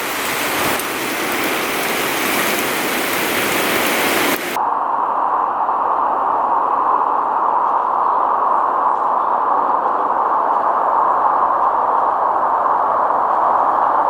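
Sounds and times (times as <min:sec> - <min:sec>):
storm wind rushing and gusting: 0:00.0 - 0:14.0.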